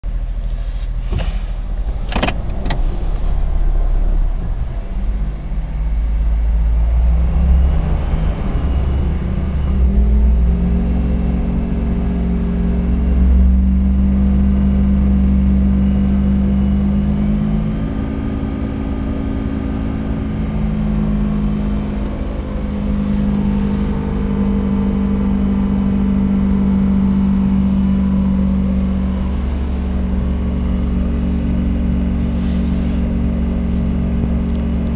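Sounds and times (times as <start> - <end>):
wheel bearing drone while driving: 0.0 - 34.9.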